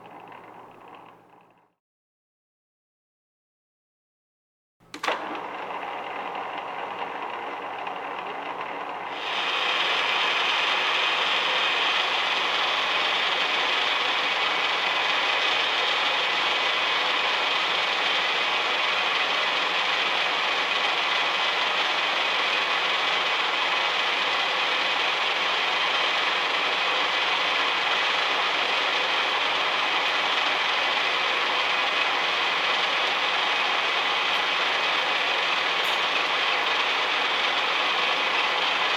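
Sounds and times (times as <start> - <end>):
milling machine clattering: 31.6 - 38.9.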